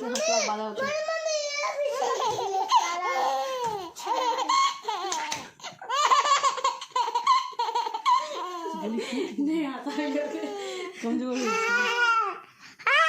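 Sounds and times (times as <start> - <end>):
baby laughing: 1.8 - 9.1.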